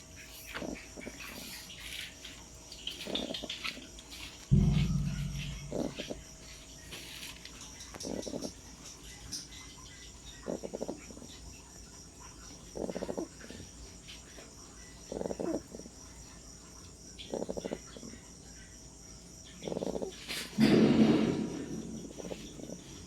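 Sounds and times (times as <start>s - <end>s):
puppy snoring: 0.4s - 1.7s, 3.0s - 3.5s, 8.0s - 8.6s, 10.3s - 11.3s, 12.6s - 13.7s, 15.0s - 16.0s, 17.2s - 18.2s, 19.6s - 23.0s.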